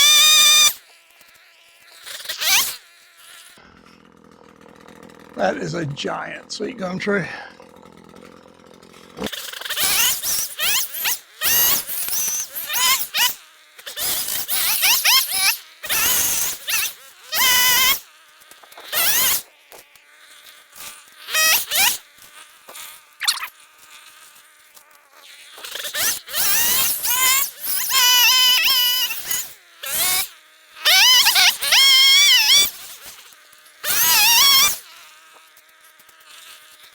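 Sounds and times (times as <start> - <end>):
hand saw cutting a tree limb: 2.2 - 2.9, 7.6 - 20.0, 24.8 - 30.3, 30.9 - 36.9
saw blade squealing: 33.9 - 34.8.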